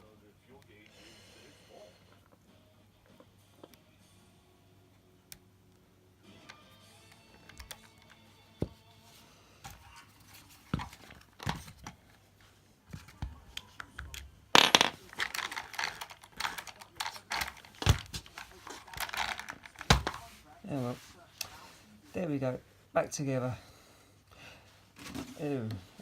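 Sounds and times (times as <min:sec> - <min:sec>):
plastic parts clicking and rattling: 0:13.0 - 0:20.2.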